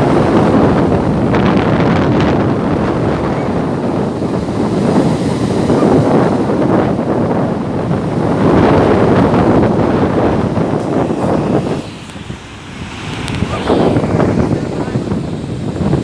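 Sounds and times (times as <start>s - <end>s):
wind buffeting microphone: 0.0s - 16.0s
sea waves breaking: 8.1s - 16.0s.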